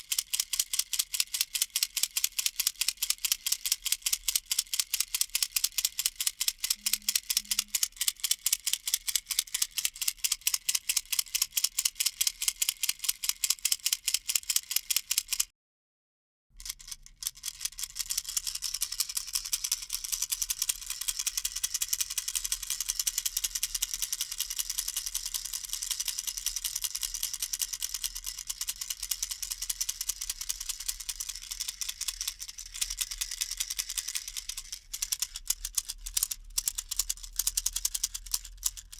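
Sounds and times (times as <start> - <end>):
baby rattle shaking: 3.2 - 10.0, 16.6 - 38.9.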